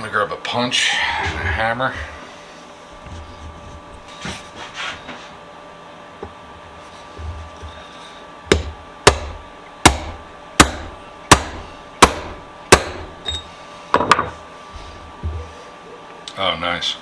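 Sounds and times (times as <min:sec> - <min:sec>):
hammer striking steel punch: 0:08.5 - 0:13.1.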